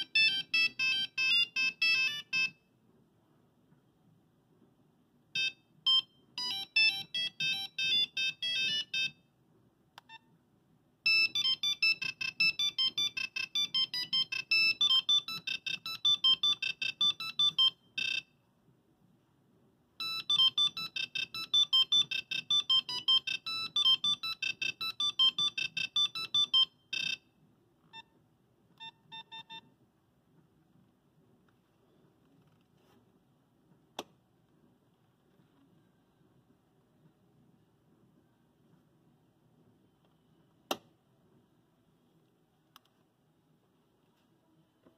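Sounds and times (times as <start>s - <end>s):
monophonic phone ringtone melodies: 0.0s - 2.6s, 5.4s - 9.2s, 11.0s - 18.3s, 20.0s - 27.2s.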